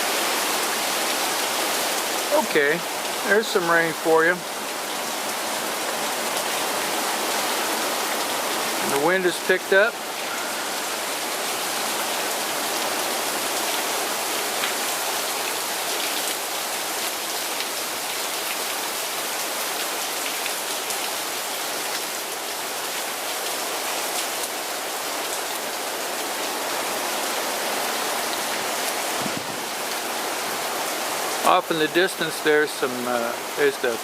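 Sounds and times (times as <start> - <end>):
steady rain hiss: 0.0 - 34.0.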